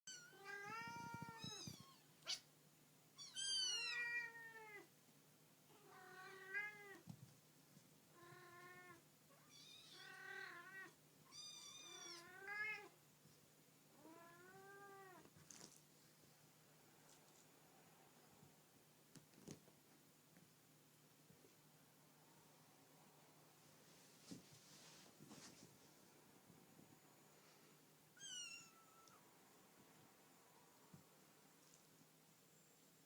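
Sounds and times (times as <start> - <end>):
kittens meowing: 3.2 - 4.9, 28.2 - 29.2.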